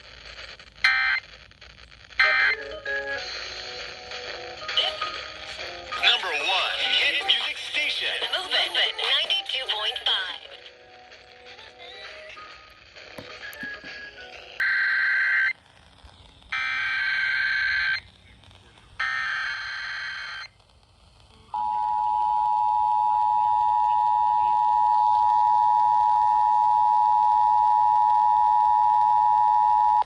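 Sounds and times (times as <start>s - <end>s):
raspy digital data bursts: 19.0s - 21.2s.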